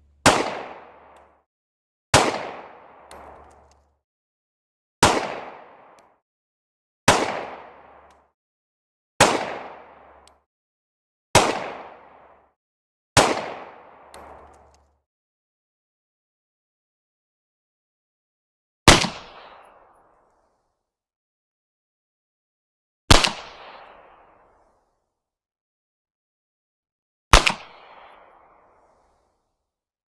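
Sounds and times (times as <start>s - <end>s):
gunshots with echo: 0.0s - 1.0s.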